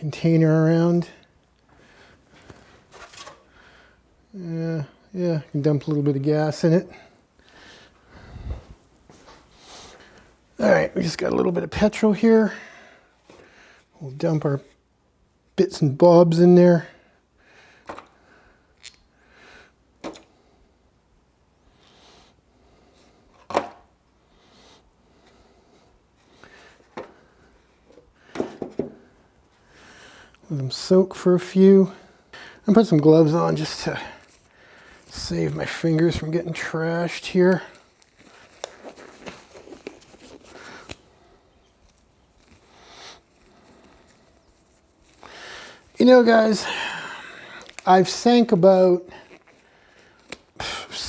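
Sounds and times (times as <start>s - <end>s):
soft handling rustles: 0.1s - 3.6s, 7.4s - 12.3s, 24.7s - 29.6s, 30.3s - 46.6s, 47.2s - 50.6s.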